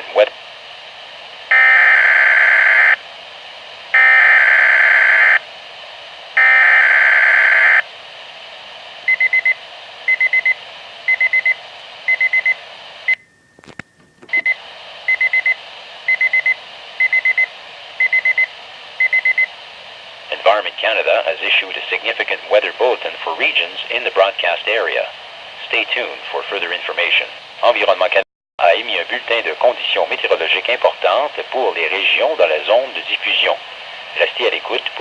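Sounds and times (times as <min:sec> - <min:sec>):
weather radio alarm beeping: 0:01.5 - 0:03.0, 0:04.0 - 0:05.4, 0:06.4 - 0:07.8, 0:14.3 - 0:19.5.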